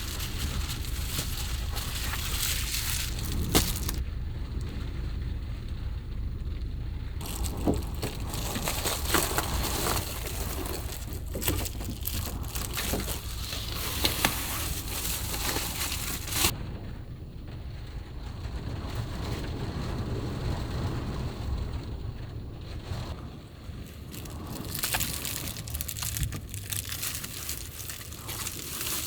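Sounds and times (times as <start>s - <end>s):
low rumble: 0.0s - 29.0s
heavy rain on a van roof: 14.5s - 29.0s.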